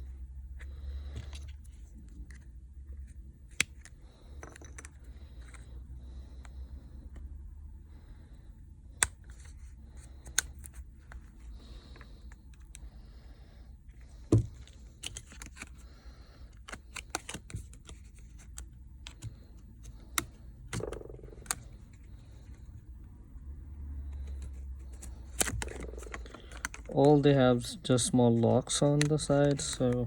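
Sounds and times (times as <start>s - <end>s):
low steady hum: 0.0s - 30.0s
plastic clips clicking and snapping: 24.9s - 27.3s, 28.7s - 30.0s.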